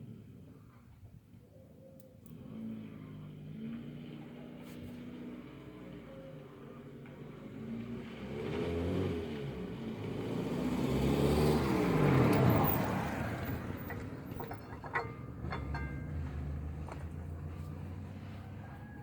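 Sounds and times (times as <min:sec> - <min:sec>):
car passing by: 0:06.9 - 0:19.0.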